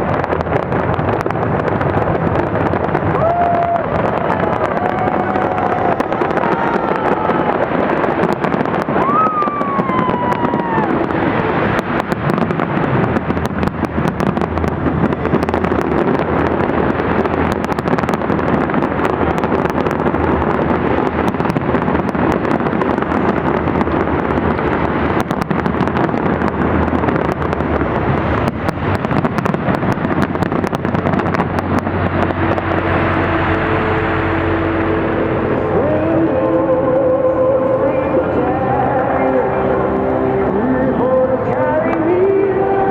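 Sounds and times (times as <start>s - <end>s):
fireworks bangs and crackles: 0.0s - 42.9s
falling firework whistle: 2.9s - 26.3s.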